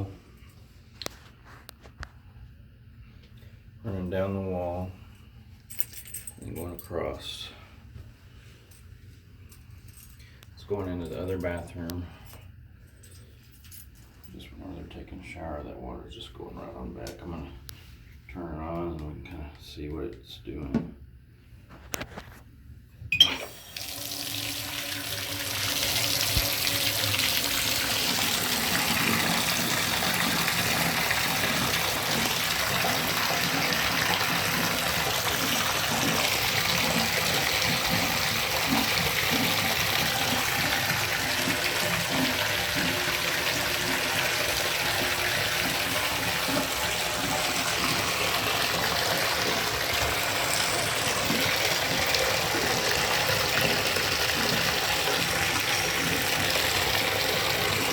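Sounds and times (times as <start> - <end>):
shower water running into tub: 23.5 - 57.9.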